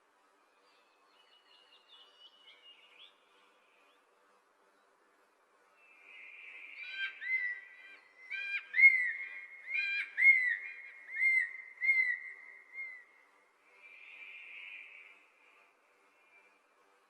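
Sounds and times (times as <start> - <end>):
sharp bird calls: 6.1 - 13.0.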